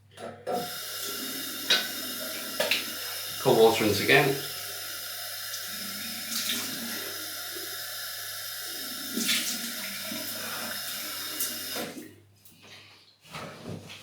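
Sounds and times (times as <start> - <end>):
tap running into sink: 0.5 - 3.0.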